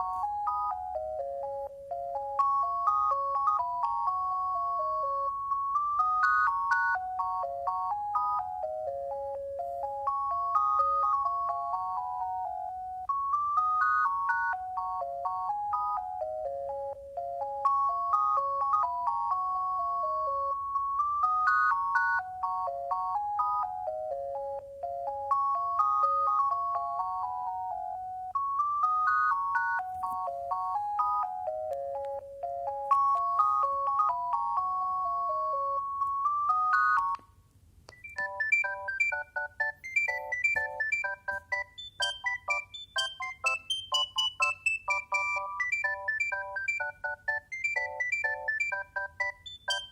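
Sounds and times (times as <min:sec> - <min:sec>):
faster higher ringtone: 0:00.0 - 0:37.2, 0:37.9 - 0:49.9
mobile phone beeping ringtone: 0:00.0 - 0:37.3, 0:37.9 - 0:49.9.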